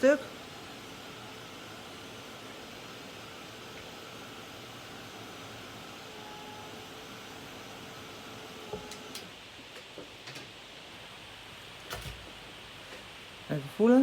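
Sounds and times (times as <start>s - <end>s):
heat tool blowing: 0.0s - 9.2s.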